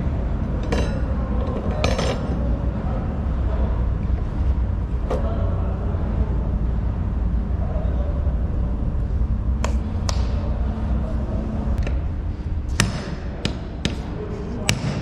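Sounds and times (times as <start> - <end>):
steady low rumble: 0.0 - 15.0.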